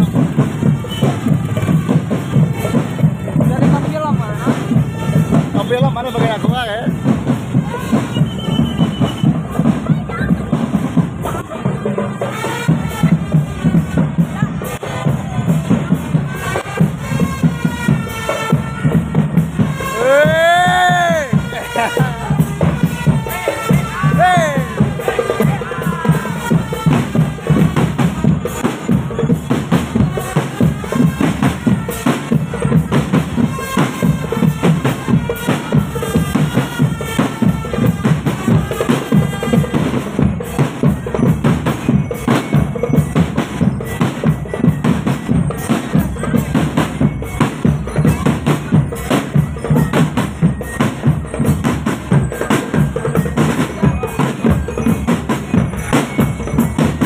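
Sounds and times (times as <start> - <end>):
bass drums: 0.0 - 57.0
marching drum band playing: 0.0 - 57.0
melody over drums: 0.0 - 57.0
snare drums: 0.0 - 57.0.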